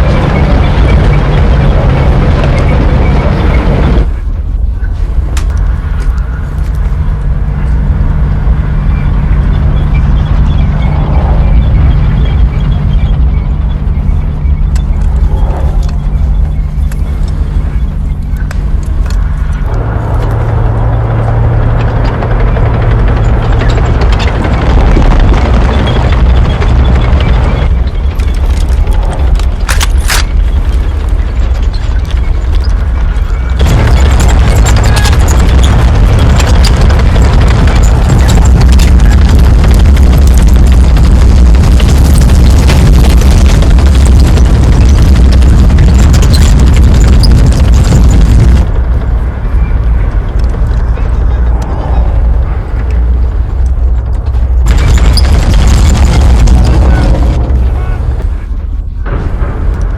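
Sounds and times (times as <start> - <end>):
tank engine drone: 0.0 - 59.9
tank tracks clanking and squealing: 8.8 - 59.9.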